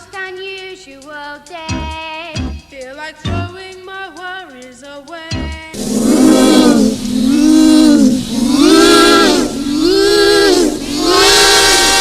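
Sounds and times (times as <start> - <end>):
voice making wailing alien noise: 5.8 - 12.0.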